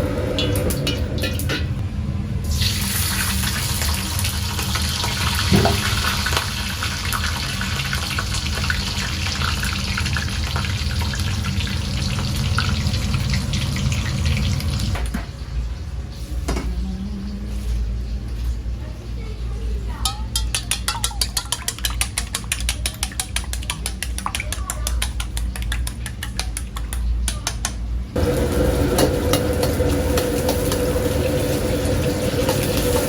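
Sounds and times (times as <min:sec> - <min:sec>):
water running from tap: 0:02.5 - 0:15.8, 0:28.2 - 0:33.0.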